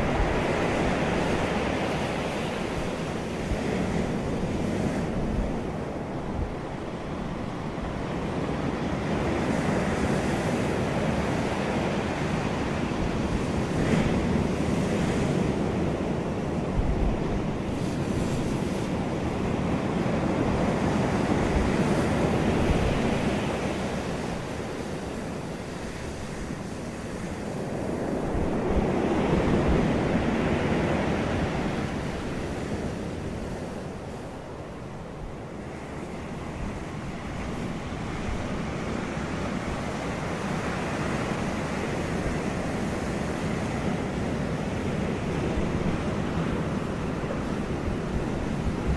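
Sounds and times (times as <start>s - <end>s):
wind buffeting microphone: 0.0s - 48.9s.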